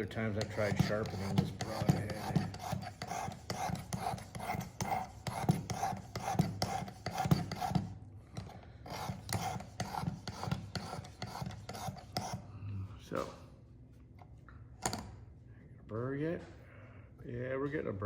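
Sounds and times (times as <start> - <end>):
sharpener scraping blade edge: 0.4 - 7.9, 8.9 - 12.4.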